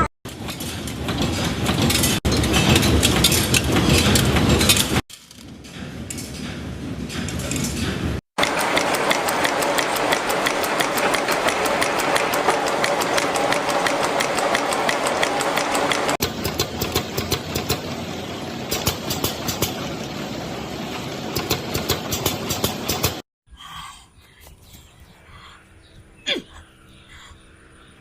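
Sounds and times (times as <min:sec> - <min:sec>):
production machinery running: 0:00.0 - 0:23.2
machine clicking rhythm: 0:08.4 - 0:20.0, 0:21.3 - 0:23.2.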